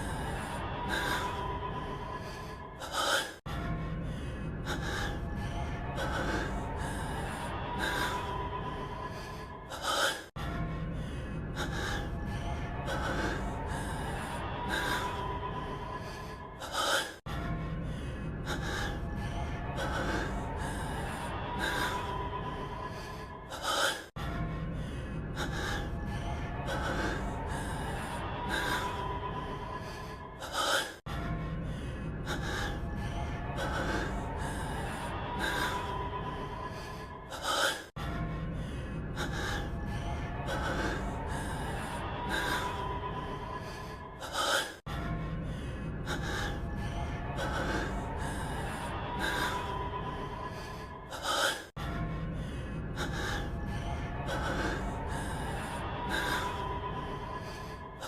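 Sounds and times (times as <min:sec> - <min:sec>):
man panting and gasping: 0:00.0 - 0:58.0.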